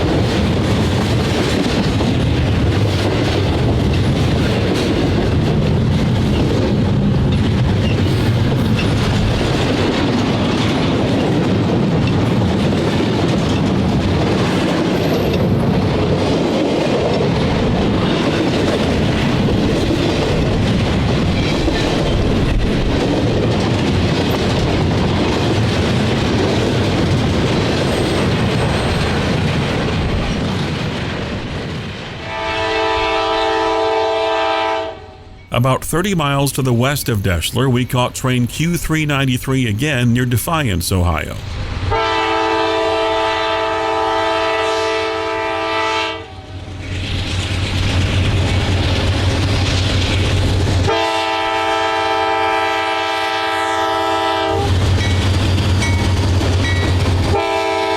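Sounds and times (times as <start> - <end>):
freight train rumbling on rails: 0.0 - 57.9
locomotive air horn: 32.2 - 35.3, 41.9 - 46.5, 50.9 - 54.8, 57.3 - 57.9.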